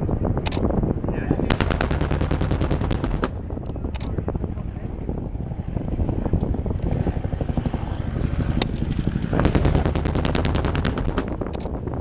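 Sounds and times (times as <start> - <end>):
pyrotechnic cracks: 1.5 - 3.7, 9.4 - 11.7
steady low rumble: 1.5 - 5.7, 9.3 - 12.0.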